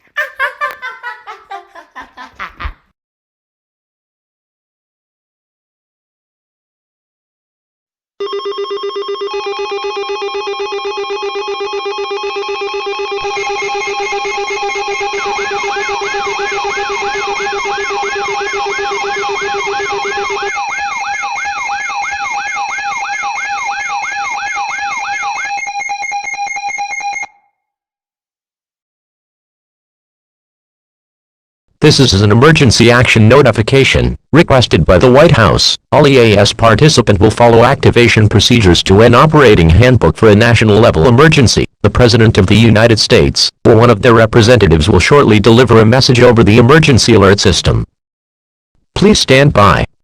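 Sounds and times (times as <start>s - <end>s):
steady electronic alarm tones: 8.2s - 27.5s
fast electronic pulsing: 12.7s - 24.9s
rising siren-like sweep: 13.3s - 25.5s.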